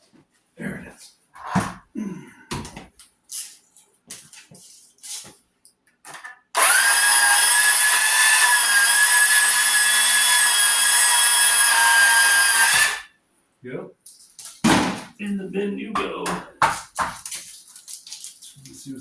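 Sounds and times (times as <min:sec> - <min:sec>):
power tool motor whining: 0:06.6 - 0:13.1.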